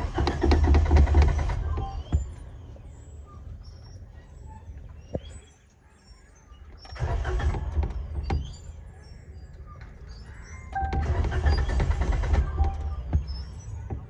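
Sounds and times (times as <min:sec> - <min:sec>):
car starter cranking engine: 0:00.0 - 0:02.4, 0:06.8 - 0:14.0
faint bird chirps: 0:01.3 - 0:11.8, 0:12.4 - 0:14.0.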